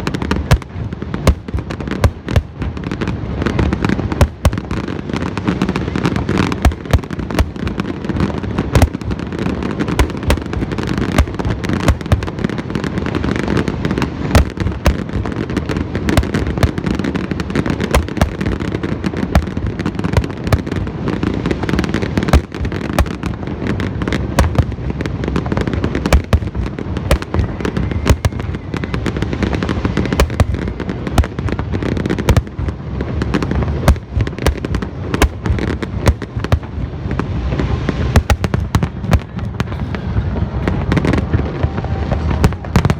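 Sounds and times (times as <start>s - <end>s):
crackling rumble: 0.0s - 42.9s
fireworks shells bursting: 4.1s - 5.1s, 6.5s - 7.9s, 8.7s - 12.8s, 14.3s - 20.9s, 24.2s - 24.9s, 26.0s - 28.6s, 29.6s - 32.6s, 33.5s - 36.8s, 38.1s - 40.0s.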